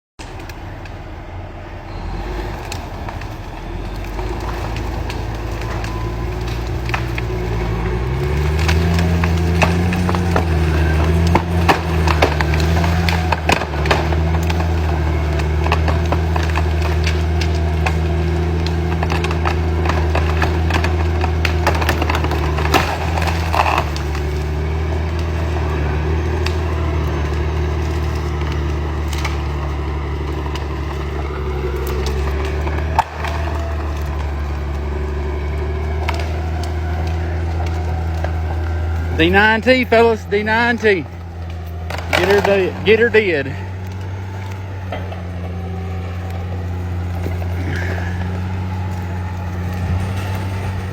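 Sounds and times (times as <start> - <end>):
bulldozer diesel engine running: 0.2 - 50.9
wood cracking and splintering: 0.2 - 50.9.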